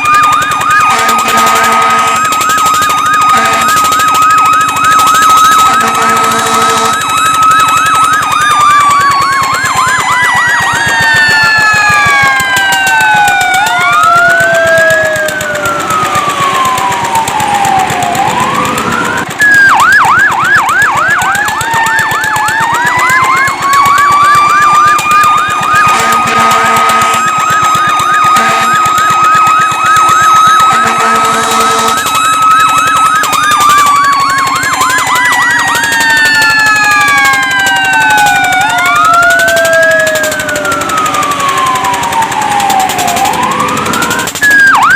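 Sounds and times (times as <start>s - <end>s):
fire truck siren wailing: 0.0s - 44.9s
second siren steady wail: 0.0s - 44.9s
siren fast yelp: 0.0s - 44.9s
horn blasts: 0.8s - 2.5s, 3.2s - 3.9s, 5.4s - 7.2s, 25.8s - 27.5s, 28.2s - 29.1s, 30.7s - 32.2s.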